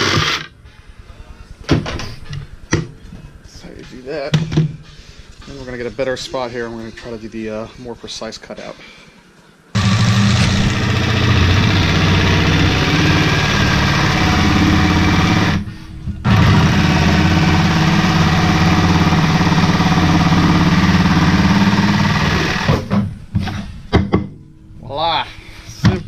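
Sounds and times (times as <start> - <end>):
power saw cutting plastic: 0.0 - 0.6, 9.8 - 22.9.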